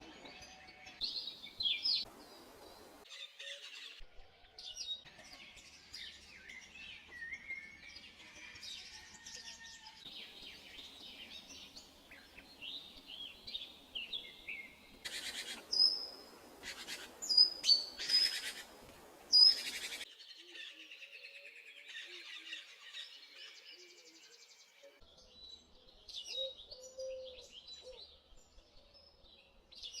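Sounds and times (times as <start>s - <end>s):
songbirds chirping and singing: 0.0s - 30.0s
sharp piercing bird calls: 14.0s - 18.7s.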